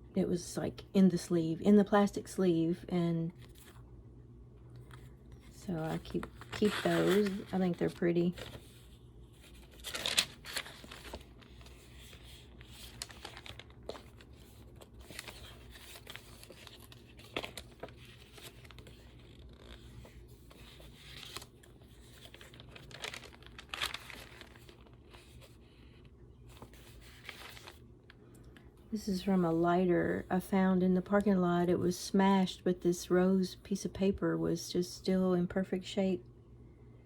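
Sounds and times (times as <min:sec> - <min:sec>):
paper pages rustling: 0:03.4 - 0:03.8, 0:04.8 - 0:27.8.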